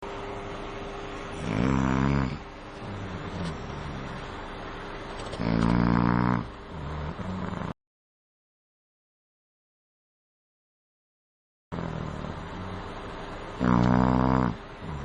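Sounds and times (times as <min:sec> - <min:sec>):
man snoring: 0:01.3 - 0:04.2, 0:05.4 - 0:07.8, 0:11.7 - 0:12.8, 0:13.6 - 0:15.0.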